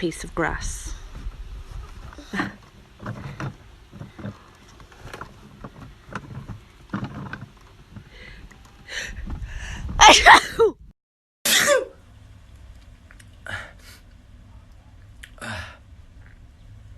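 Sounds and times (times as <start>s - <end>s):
low microphone rumble: 0.0s - 10.9s.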